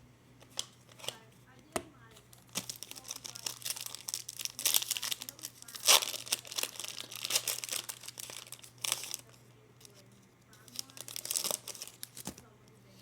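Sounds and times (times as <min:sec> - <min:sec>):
foil wrapper crinkling: 0:02.2 - 0:12.5.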